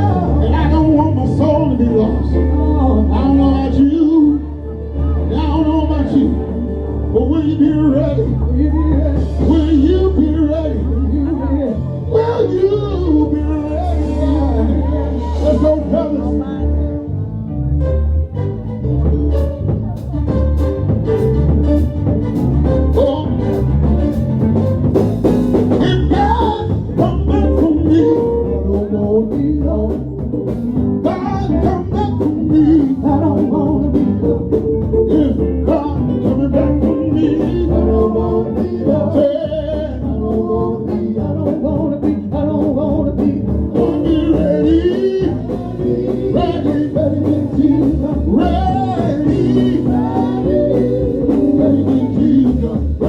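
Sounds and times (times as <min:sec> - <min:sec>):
people singing: 0:00.0 - 0:05.6, 0:07.2 - 0:16.6, 0:31.0 - 0:53.0
gospel band playing: 0:00.0 - 0:53.0.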